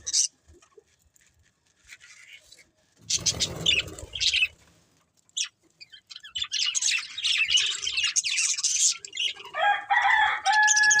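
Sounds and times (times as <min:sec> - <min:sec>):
budgerigars chirping and chattering: 0:03.0 - 0:04.6, 0:05.3 - 0:11.0.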